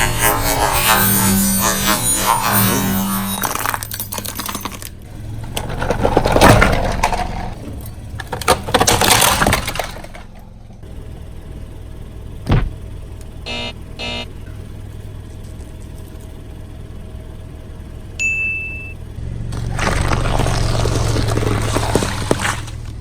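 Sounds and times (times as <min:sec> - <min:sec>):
tyre crushing brittle objects: 0:00.0 - 0:07.6, 0:19.5 - 0:23.0.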